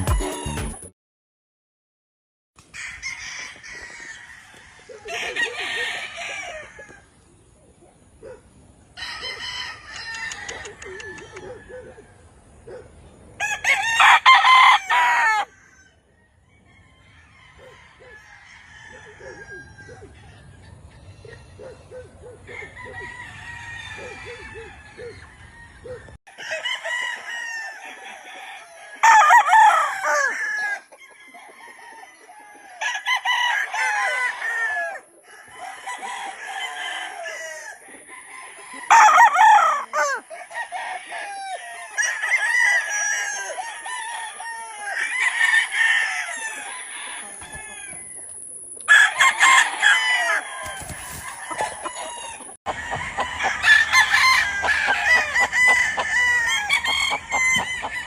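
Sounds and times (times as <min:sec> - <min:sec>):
roosters crowing: 0:02.6 - 0:07.5, 0:08.2 - 0:58.0
chickens clucking: 0:03.6 - 0:13.4, 0:16.6 - 0:23.2, 0:46.2 - 0:58.0.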